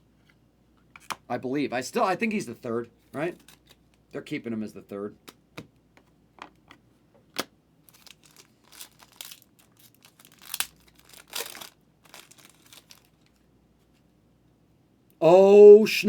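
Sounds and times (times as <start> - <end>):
foil wrapping crinkling: 7.9 - 13.4.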